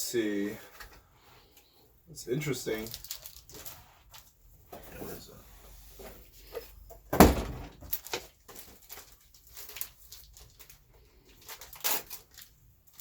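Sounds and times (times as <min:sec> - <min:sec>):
packaging rustling: 0:02.7 - 0:04.3, 0:07.8 - 0:13.0.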